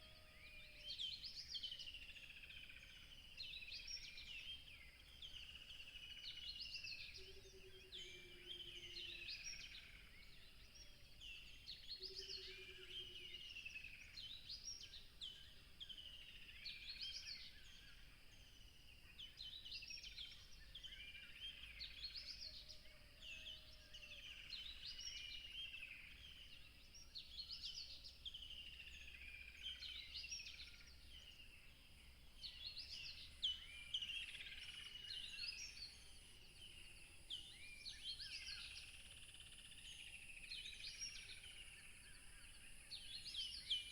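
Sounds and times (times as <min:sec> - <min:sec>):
songbird singing: 0:00.0 - 0:43.9.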